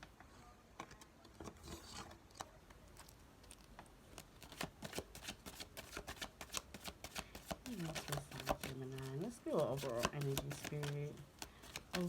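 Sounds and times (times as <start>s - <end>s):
cards being shuffled: 2.7s - 12.0s.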